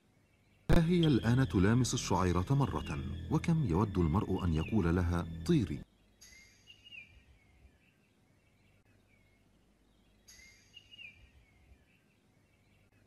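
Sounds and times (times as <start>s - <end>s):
faint outdoor nature ambience: 0.0s - 13.0s
soft high chirping call: 0.7s - 7.9s.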